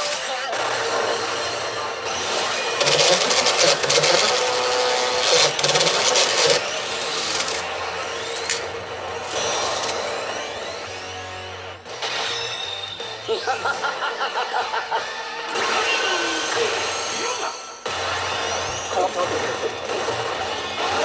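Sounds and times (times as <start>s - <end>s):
pachinko machine rattling: 0.0s - 10.5s.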